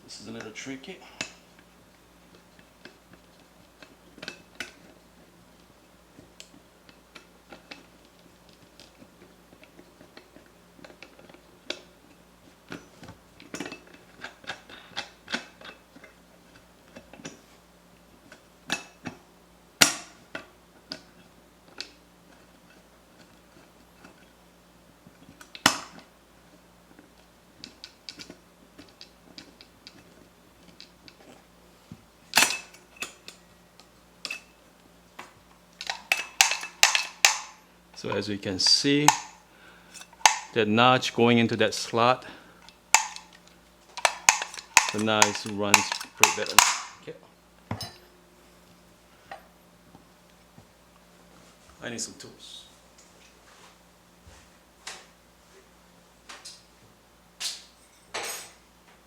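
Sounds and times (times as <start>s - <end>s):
grinder parts clicking and scraping: 35.2s - 40.6s, 42.3s - 47.1s.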